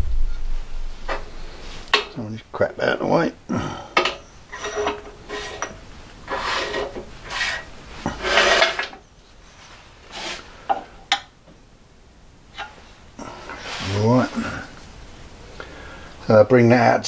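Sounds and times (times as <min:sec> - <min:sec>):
metal tools scraping and clinking: 0:04.0 - 0:09.0.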